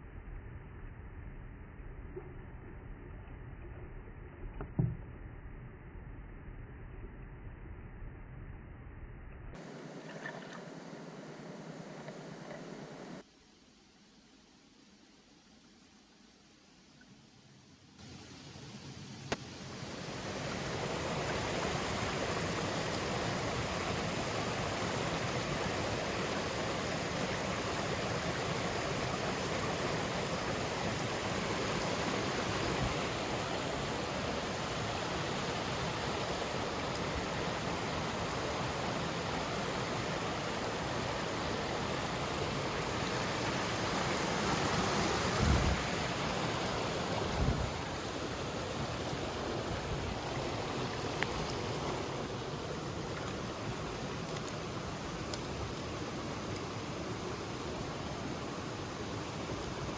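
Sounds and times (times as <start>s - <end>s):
stream water rushing: 9.6s - 13.3s, 18.0s - 59.9s.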